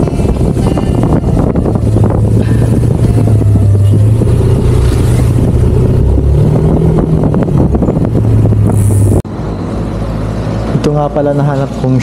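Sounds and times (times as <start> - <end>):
scooter engine droning: 0.0 - 9.2.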